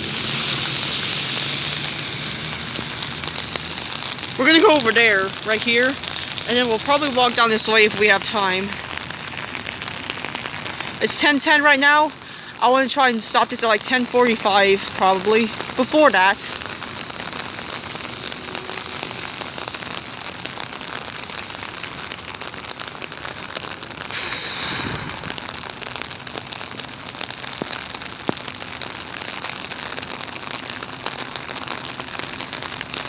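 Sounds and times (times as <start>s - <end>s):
loud hiss: 0.0s - 4.4s, 14.2s - 25.9s
steady rain falling: 0.0s - 33.0s.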